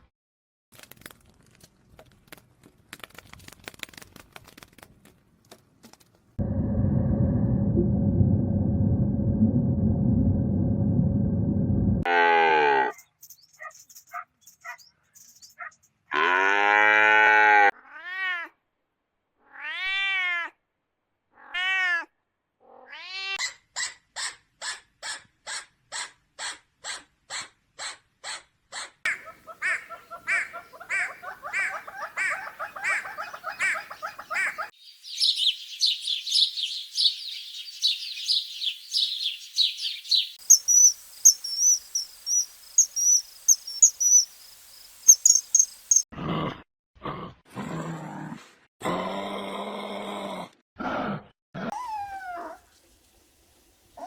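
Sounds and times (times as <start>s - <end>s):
high insect chirping: 34.8s - 46.0s.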